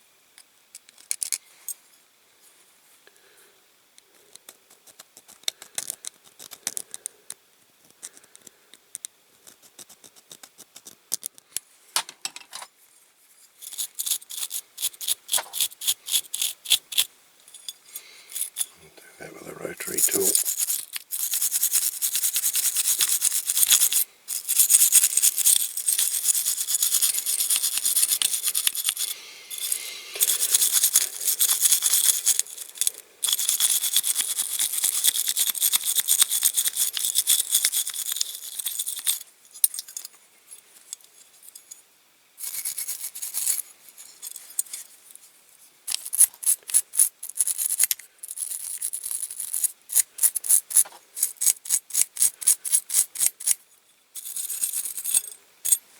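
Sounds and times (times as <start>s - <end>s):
wire brush scrubbing metal: 19.8s - 39.2s.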